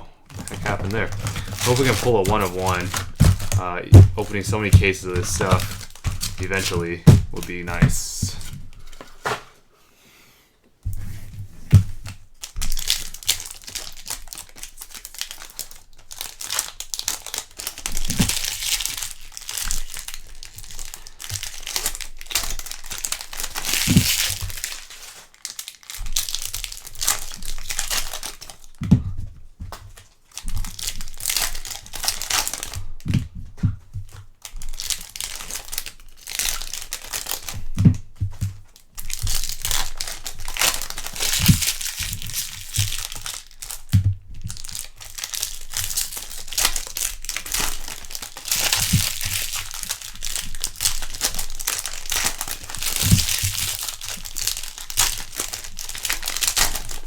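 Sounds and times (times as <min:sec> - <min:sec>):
soft thumps: 0:00.0 - 0:09.4
foil wrappers crinkling and tearing: 0:00.3 - 0:09.4, 0:11.8 - 0:28.8, 0:29.8 - 0:33.2, 0:34.0 - 0:57.0.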